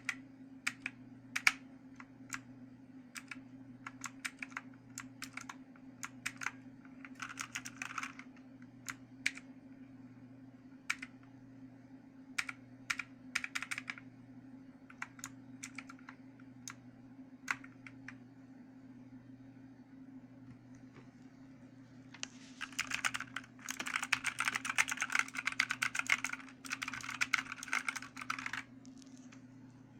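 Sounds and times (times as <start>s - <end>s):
mechanical keyboard typing: 0.0s - 2.4s, 3.1s - 9.5s, 10.9s - 11.2s, 12.4s - 14.0s, 14.9s - 16.8s, 17.4s - 18.2s, 22.6s - 28.7s
steady low hum: 0.0s - 29.9s.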